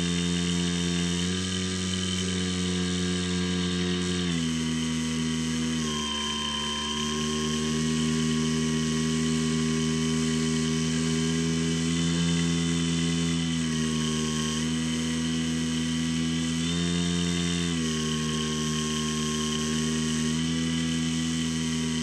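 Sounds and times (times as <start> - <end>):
electric motor and propeller: 0.0 - 22.0.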